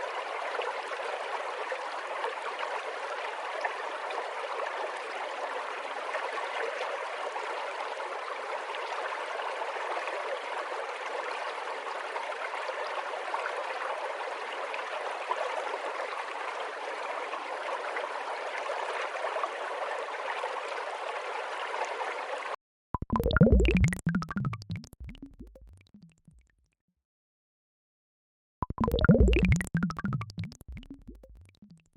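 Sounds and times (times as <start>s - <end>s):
running water flowing: 21.2s - 26.1s, 28.6s - 31.8s.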